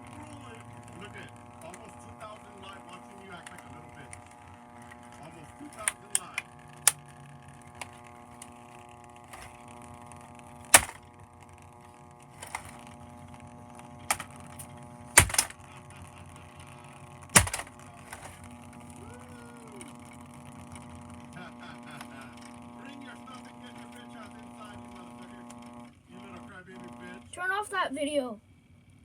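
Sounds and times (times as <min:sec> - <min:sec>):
steady multi-tone hum: 0:00.0 - 0:28.5
sharp clicks: 0:09.3 - 0:09.6, 0:10.7 - 0:11.0, 0:12.4 - 0:12.9, 0:14.1 - 0:15.6, 0:17.4 - 0:18.5.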